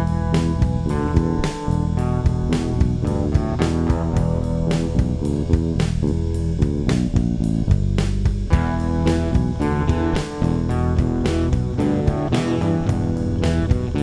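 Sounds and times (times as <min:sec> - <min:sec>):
guitar and bass music with beat: 0:00.0 - 0:14.0.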